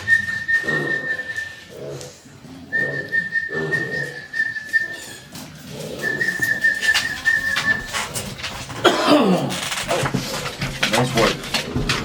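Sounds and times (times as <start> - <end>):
soft low animal sounds: 0.4 - 8.8.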